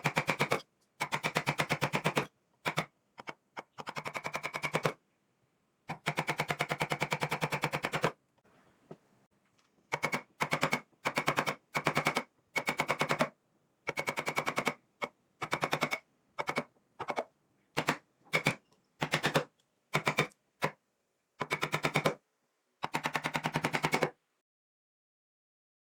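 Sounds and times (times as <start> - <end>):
power chisel hammering wood: 0.0 - 2.9, 3.8 - 5.0, 5.9 - 8.2, 9.9 - 13.3, 13.9 - 14.8, 15.4 - 20.8, 21.4 - 22.2.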